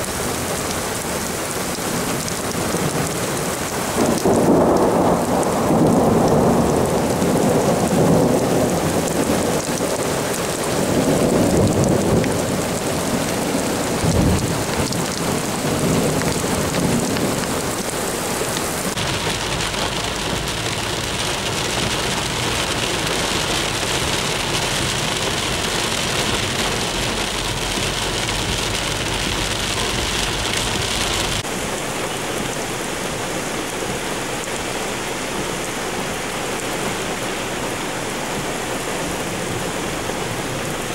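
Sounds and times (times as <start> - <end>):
heavy rain pouring: 0.0 - 40.9
rolling thunder: 4.0 - 9.8, 10.5 - 17.4
sharp thunderclap: 14.0 - 15.2.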